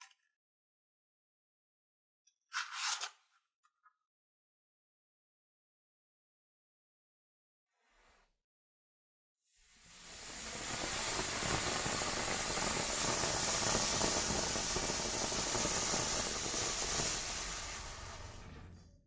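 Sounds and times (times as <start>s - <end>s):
firework crackling: 9.6s - 18.8s
firework fountain hissing: 9.6s - 18.8s.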